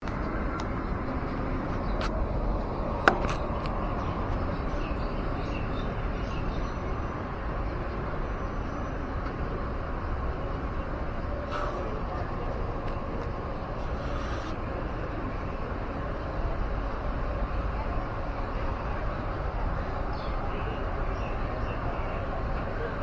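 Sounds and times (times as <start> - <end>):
passing traffic: 0.0 - 23.0.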